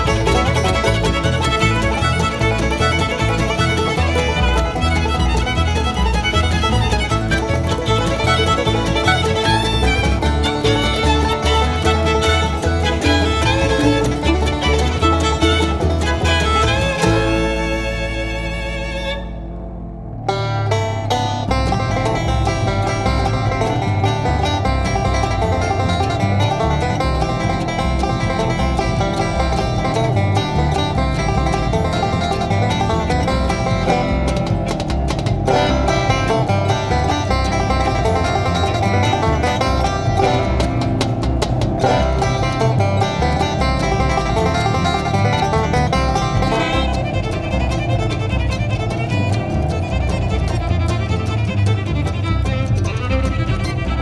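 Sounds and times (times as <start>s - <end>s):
bluegrass fiddle music: 0.0s - 54.0s
guitar: 0.0s - 54.0s
rapidly picked banjo: 0.0s - 54.0s.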